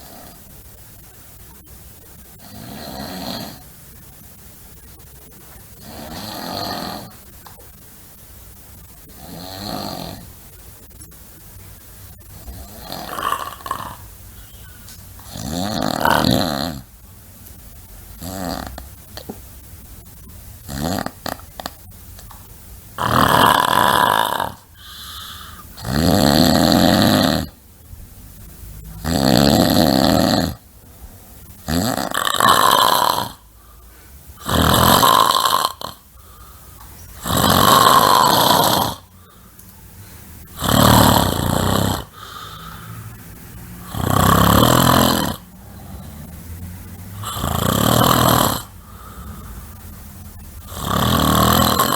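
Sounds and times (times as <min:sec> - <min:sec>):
person snoring loudly: 0:02.3 - 0:03.7, 0:05.8 - 0:07.2, 0:09.1 - 0:10.4, 0:12.2 - 0:14.1, 0:15.2 - 0:16.9, 0:18.2 - 0:18.8, 0:20.6 - 0:21.8, 0:23.0 - 0:27.6, 0:29.0 - 0:30.6, 0:31.6 - 0:33.5, 0:34.4 - 0:36.4, 0:37.2 - 0:39.2, 0:40.5 - 0:43.2, 0:43.8 - 0:46.3, 0:47.1 - 0:49.6, 0:50.6 - 0:51.9
quiet breathing: 0:24.6 - 0:25.8, 0:33.4 - 0:34.4, 0:35.9 - 0:37.2, 0:39.0 - 0:44.0, 0:48.6 - 0:50.7.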